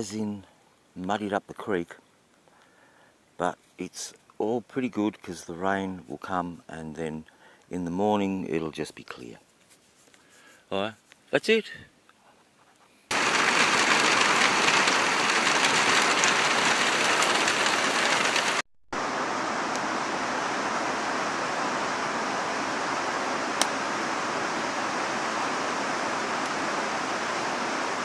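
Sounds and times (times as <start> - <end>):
creek water rushing: 13.1 - 28.0
rain falling: 13.1 - 28.0.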